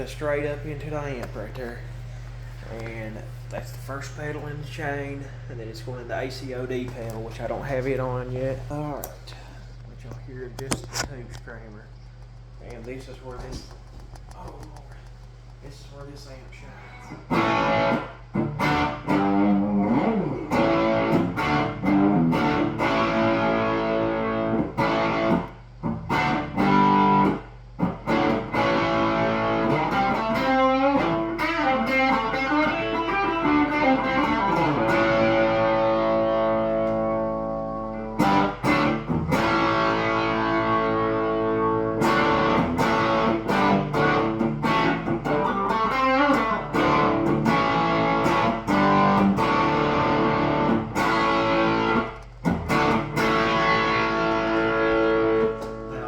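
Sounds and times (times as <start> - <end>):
overdriven electric guitar: 17.0 - 56.0.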